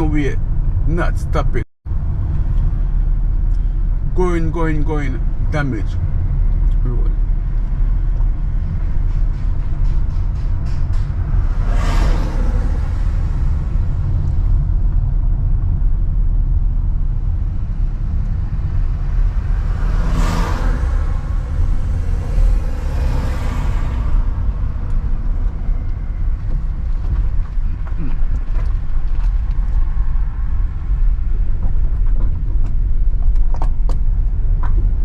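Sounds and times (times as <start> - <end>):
rushes of noise: 5.2 - 34.6
car driving over rough road: 7.2 - 35.0.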